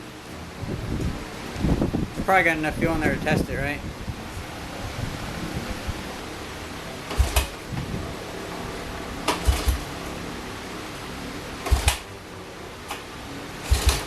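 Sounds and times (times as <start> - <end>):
recoil starter pulls: 7.1 - 7.6, 9.3 - 9.9, 11.6 - 12.0, 13.6 - 14.0
engine turning over thumps: 7.1 - 8.0, 9.2 - 9.9, 11.6 - 12.0, 13.6 - 14.0.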